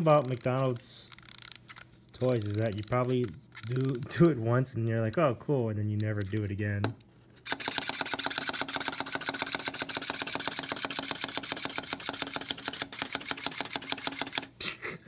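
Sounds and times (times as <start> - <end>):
toy mechanism clicking fast: 0.0 - 4.4, 7.4 - 14.6.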